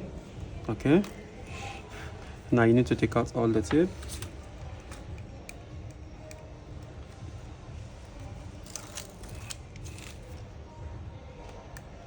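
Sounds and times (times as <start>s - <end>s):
steady low hum: 0.0s - 12.0s
adhesive tape being peeled: 8.0s - 10.5s.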